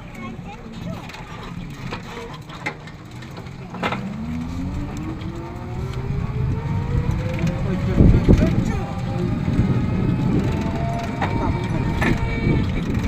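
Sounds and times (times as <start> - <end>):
engine speeding up: 3.0 - 13.0
low rumble: 3.3 - 13.0.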